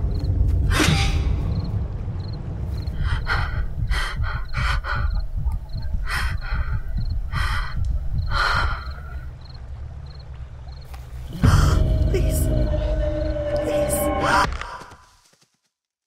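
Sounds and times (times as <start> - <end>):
low rumbling drone: 0.0 - 14.6
ragged gasping breaths: 2.9 - 9.2.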